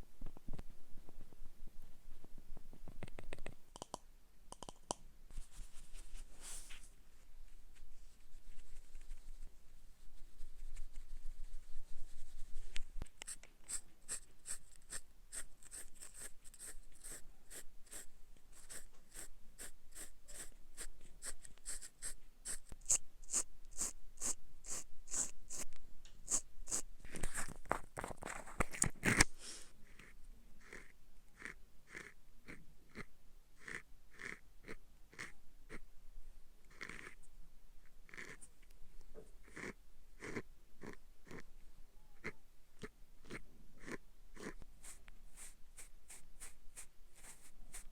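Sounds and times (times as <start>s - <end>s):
scratchy makeup tool strokes: 10.2s - 27.5s, 43.3s - 47.9s.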